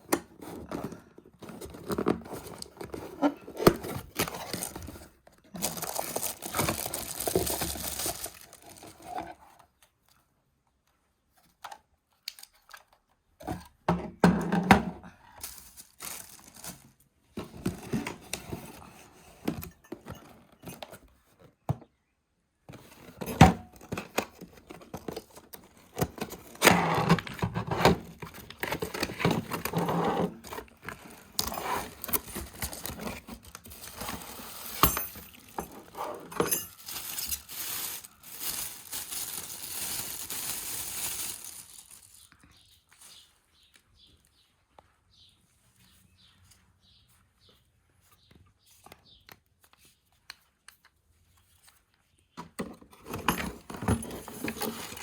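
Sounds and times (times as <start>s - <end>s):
packaging crinkling and tearing: 3.6s - 9.2s, 15.4s - 17.0s, 28.0s - 42.4s.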